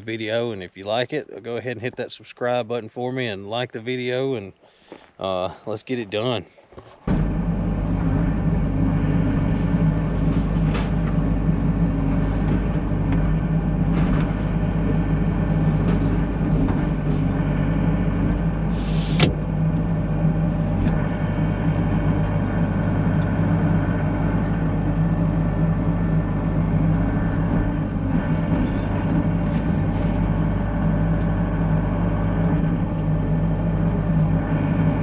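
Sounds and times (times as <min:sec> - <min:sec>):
diesel engine running: 0:05.9 - 0:35.0
short hiss: 0:18.7 - 0:19.3.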